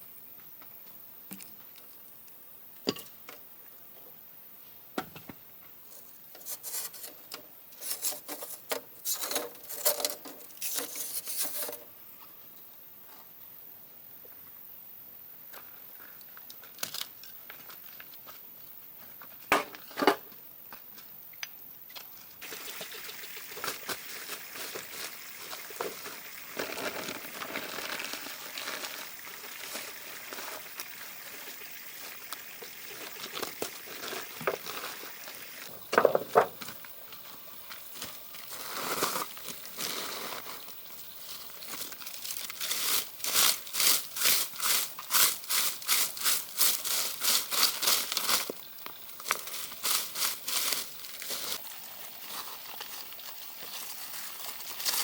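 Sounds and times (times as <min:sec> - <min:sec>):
steady hiss: 0:00.0 - 0:16.6, 0:18.2 - 0:55.0
regular strokes: 0:05.9 - 0:11.9
scraping and rustling: 0:05.9 - 0:11.9.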